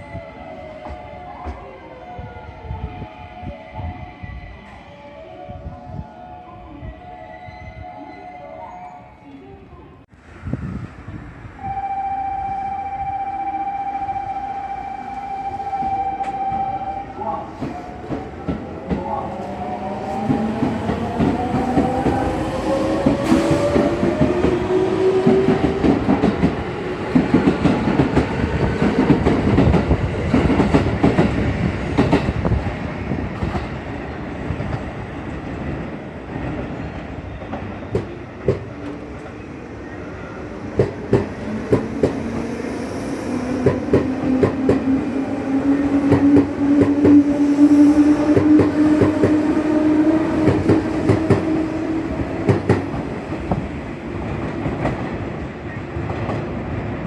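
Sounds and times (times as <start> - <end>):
train wheels clattering over rails: 50.4 - 51.6, 52.2 - 55.3.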